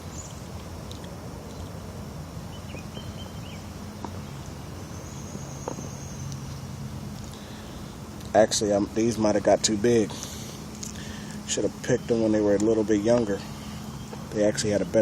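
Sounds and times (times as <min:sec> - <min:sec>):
steady low hum: 0:00.0 - 0:15.0
faint chirp: 0:10.9 - 0:15.0.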